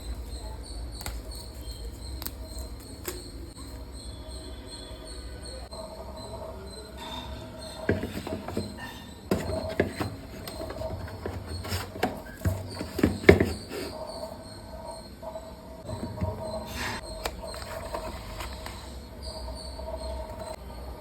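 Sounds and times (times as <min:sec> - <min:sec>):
kitchen items clicking and knocking: 0:07.7 - 0:14.0, 0:15.9 - 0:18.6.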